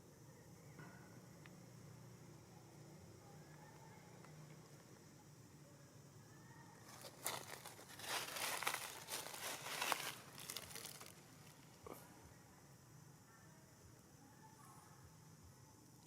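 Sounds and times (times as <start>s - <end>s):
crinkling rustling: 6.9s - 11.7s.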